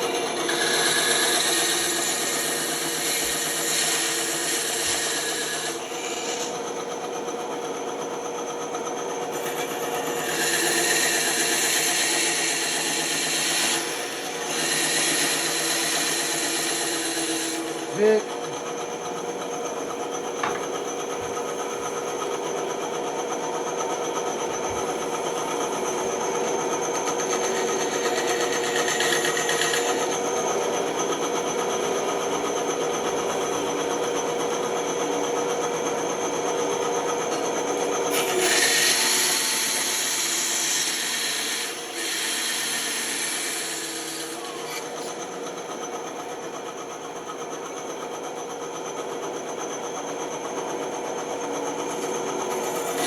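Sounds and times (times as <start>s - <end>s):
bandsaw cutting wood: 0.0s - 6.6s, 9.3s - 18.8s, 24.2s - 31.3s, 36.9s - 46.7s, 51.9s - 53.0s.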